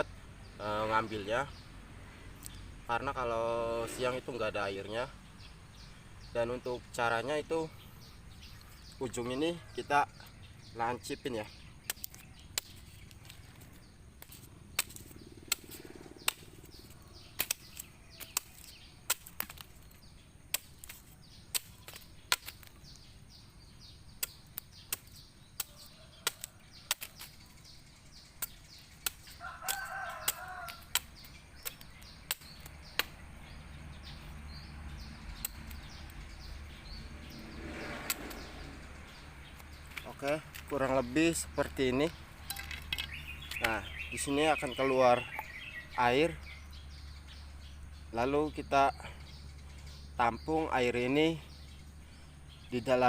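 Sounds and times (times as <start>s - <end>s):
blade cutting clicks: 14.2s - 19.7s, 24.2s - 27.4s, 28.4s - 33.2s, 35.3s - 36.1s
rooster crowing: 29.4s - 30.9s.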